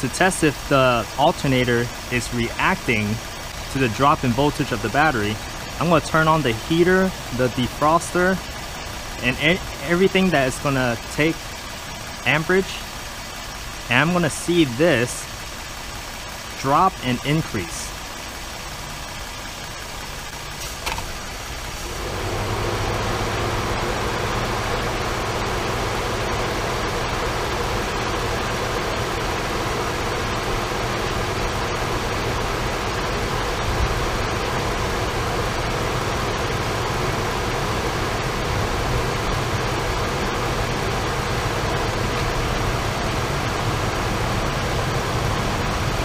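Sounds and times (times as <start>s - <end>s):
truck engine idling: 0.0s - 46.0s
heater blower rushing air: 20.5s - 46.0s.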